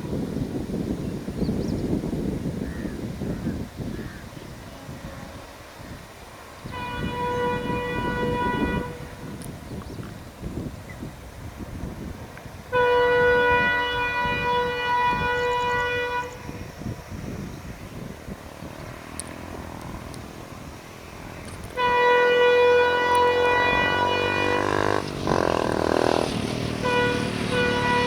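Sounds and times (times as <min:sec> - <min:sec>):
locomotive low rumble: 0:00.0 - 0:28.0
locomotive horn blast: 0:04.5 - 0:09.5, 0:12.6 - 0:16.9, 0:18.0 - 0:28.0.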